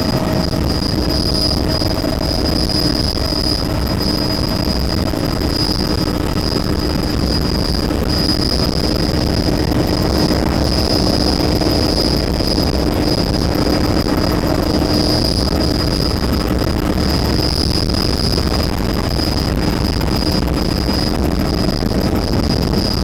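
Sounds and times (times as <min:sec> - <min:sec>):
helicopter cabin drone: 0:00.0 - 0:23.0
high constant whine: 0:00.0 - 0:23.0.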